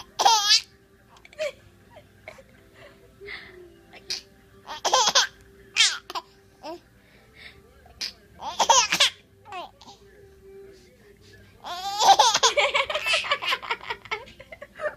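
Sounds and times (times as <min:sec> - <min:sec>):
baby laughing: 0:00.0 - 0:01.6, 0:04.0 - 0:06.8, 0:08.4 - 0:09.8, 0:11.6 - 0:14.9.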